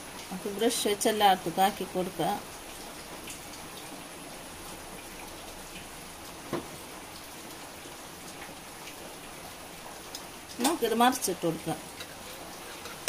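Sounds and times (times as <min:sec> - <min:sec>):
food sizzling in oil: 0:09.6 - 0:13.0.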